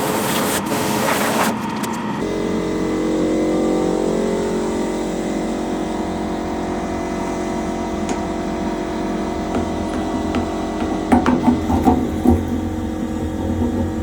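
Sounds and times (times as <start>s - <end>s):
small motor humming: 1.6s - 14.0s.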